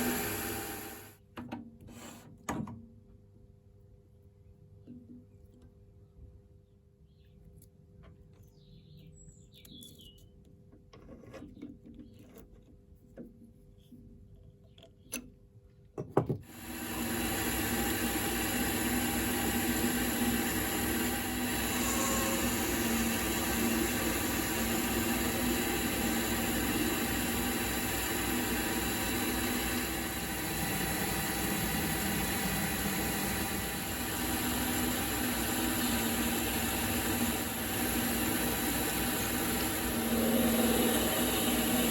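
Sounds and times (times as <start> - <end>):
power tool whirring: 0.0 - 1.2, 16.5 - 41.9.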